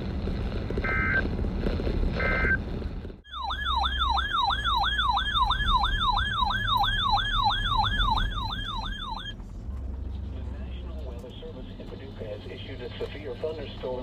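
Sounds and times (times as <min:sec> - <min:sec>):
electronic siren yelping: 0:00.9 - 0:01.2, 0:02.2 - 0:02.6, 0:03.3 - 0:09.4.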